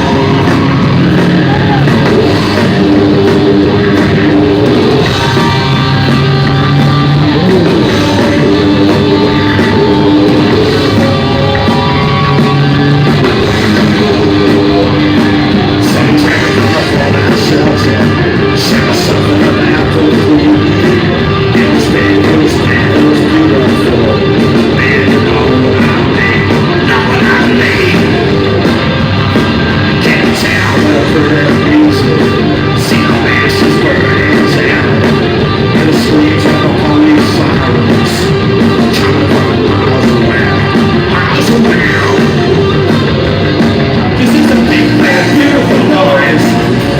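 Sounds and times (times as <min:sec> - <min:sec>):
person singing: 0:00.0 - 0:28.7, 0:29.9 - 0:42.9, 0:44.0 - 0:46.9
loud live rock band: 0:00.0 - 0:46.9.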